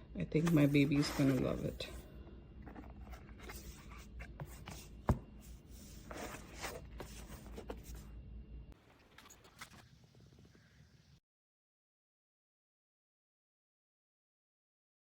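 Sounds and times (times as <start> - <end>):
cardboard pages rustling and tapping: 2.6 - 8.0.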